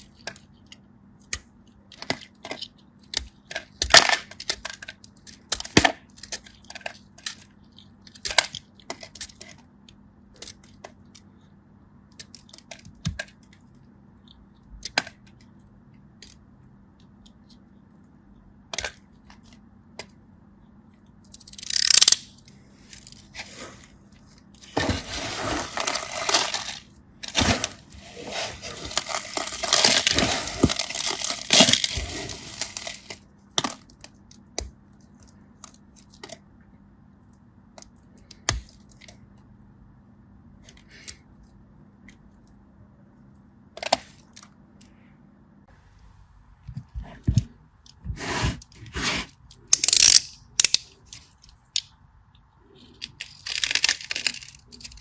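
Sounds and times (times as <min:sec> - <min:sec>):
hardened sand cracking and crunching: 0:24.8 - 0:33.2.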